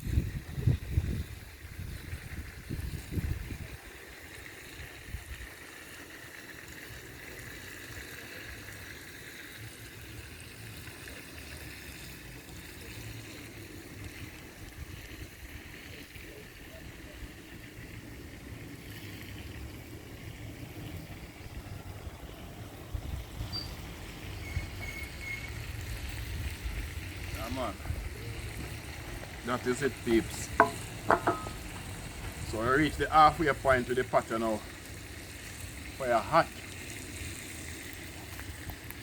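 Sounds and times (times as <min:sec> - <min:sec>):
wind rumble on microphone: 0:00.0 - 0:04.0, 0:04.8 - 0:05.5, 0:21.0 - 0:25.0, 0:26.0 - 0:29.4
wood fire hissing: 0:00.0 - 0:39.0.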